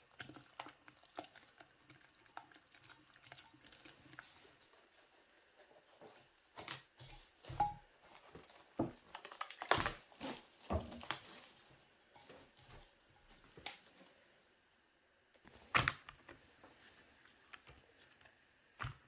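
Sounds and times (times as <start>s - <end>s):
knocks and taps in a kitchen: 7.0s - 7.8s.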